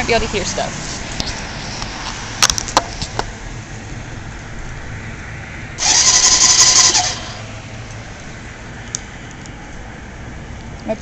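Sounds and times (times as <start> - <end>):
electric starter cranking engine: 5.8 - 7.5.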